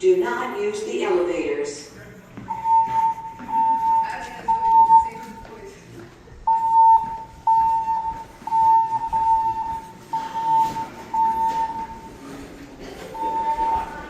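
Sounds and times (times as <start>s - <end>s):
fire alarm alert beeps: 2.5s - 5.5s, 6.5s - 12.3s, 13.2s - 14.0s.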